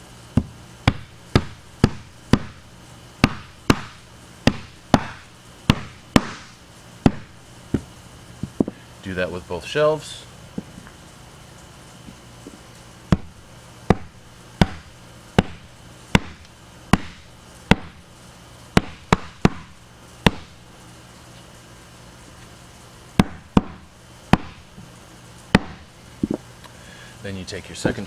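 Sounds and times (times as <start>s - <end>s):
rubber mallet knocking wood: 0.4s - 2.6s, 3.2s - 6.5s, 7.1s - 8.8s, 13.1s - 18.0s, 18.8s - 20.6s, 23.2s - 24.6s, 25.5s - 26.4s.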